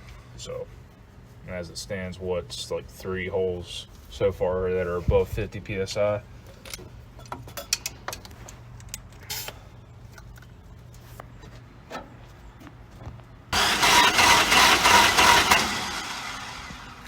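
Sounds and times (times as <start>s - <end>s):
engine starter cranking: 13.6s - 17.0s.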